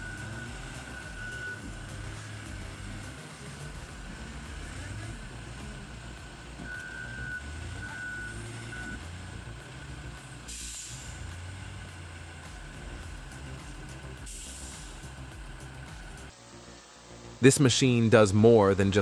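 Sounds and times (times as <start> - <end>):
electronic beeps: 0.0 - 3.2
diesel machine rumbling: 0.0 - 16.3
air hiss: 10.2 - 16.3.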